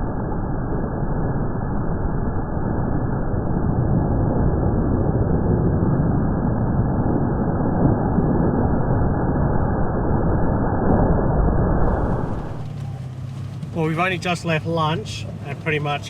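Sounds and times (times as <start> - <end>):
engine and tyre rumble: 11.7 - 16.0.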